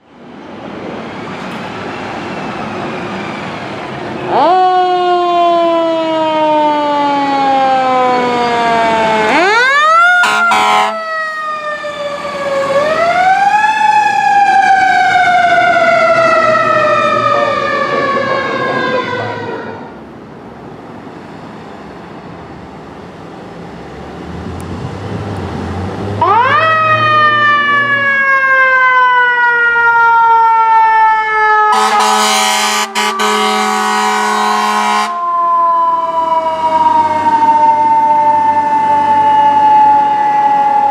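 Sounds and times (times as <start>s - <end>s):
fire engine siren wailing: 0.0s - 20.1s, 24.2s - 40.9s
air horn blasts: 10.2s - 11.1s, 31.7s - 35.2s.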